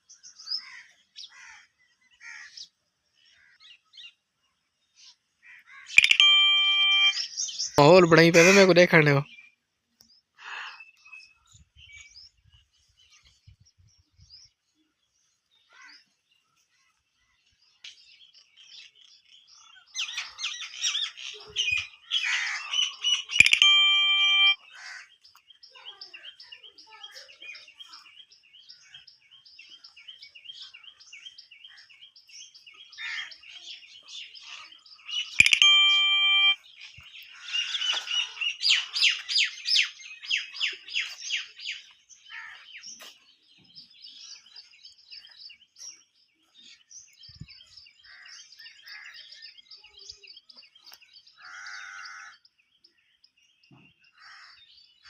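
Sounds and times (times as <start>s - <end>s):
birds chirping: 5.9s - 9.4s, 19.8s - 25.6s, 26.3s - 55.0s
steady held tone: 6.0s - 7.2s, 23.4s - 24.6s, 35.4s - 36.6s.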